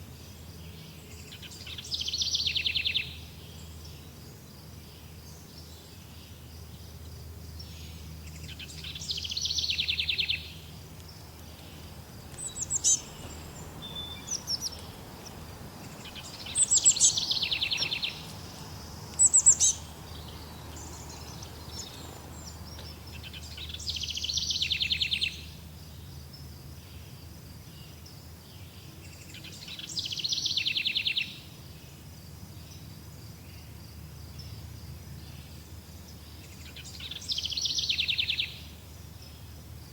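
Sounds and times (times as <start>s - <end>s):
songbird trill: 0.0s - 39.9s
low background rumble: 7.6s - 24.6s
high bird chirps: 11.5s - 24.9s.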